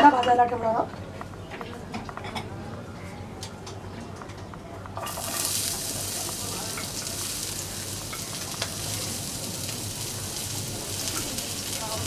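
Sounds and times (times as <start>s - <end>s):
onion sizzling in oil: 5.0s - 12.0s.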